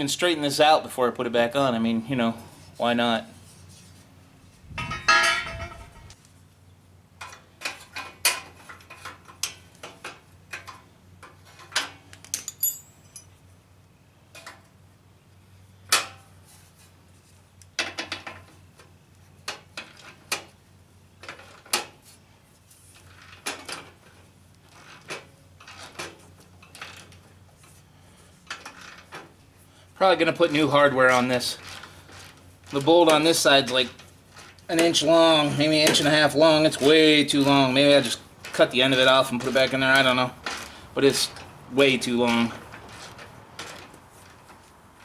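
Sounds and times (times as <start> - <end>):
metal tools and parts clanking: 4.8 - 6.1, 12.3 - 13.4.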